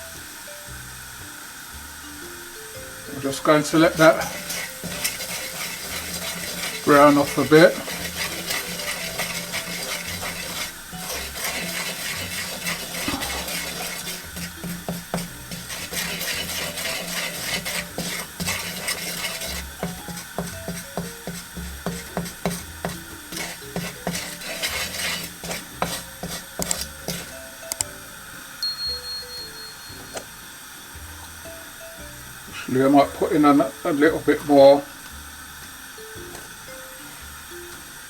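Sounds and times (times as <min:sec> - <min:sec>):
light sizzle: 0:00.0 - 0:38.0
spoon scraping and knocking pot: 0:03.4 - 0:27.3.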